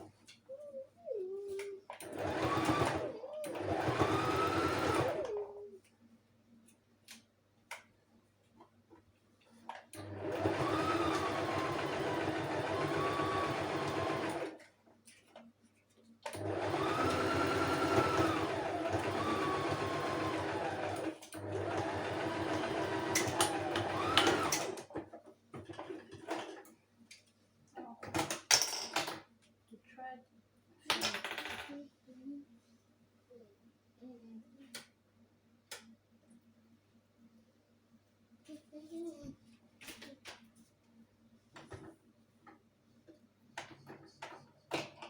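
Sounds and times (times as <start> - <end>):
sewing machine motor whine: 2.0 - 5.5, 10.0 - 14.6, 16.3 - 25.0
sewing machine clicks: 10.0 - 14.6, 16.2 - 25.0.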